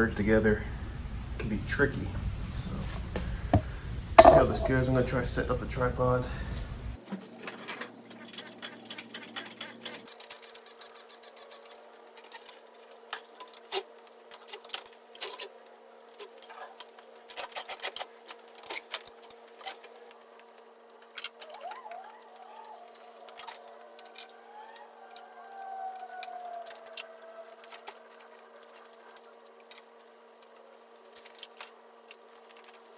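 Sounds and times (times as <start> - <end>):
steady low hum: 0.5 - 7.0.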